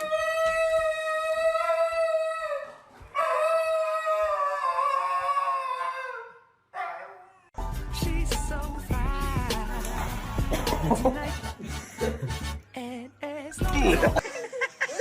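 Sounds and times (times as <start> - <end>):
dog howling: 0.0 - 7.6.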